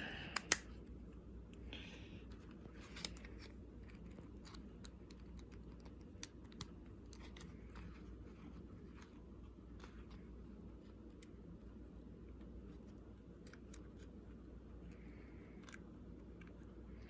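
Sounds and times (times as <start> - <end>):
small plastic parts clicking: 2.3 - 8.1, 13.2 - 14.2.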